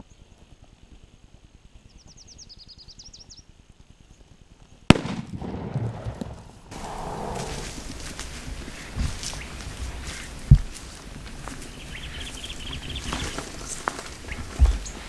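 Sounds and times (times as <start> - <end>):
small birds chirping: 1.8 - 3.5, 6.7 - 15.0
shotgun blast: 4.9 - 7.6
rustling and scuffling: 6.8 - 15.0.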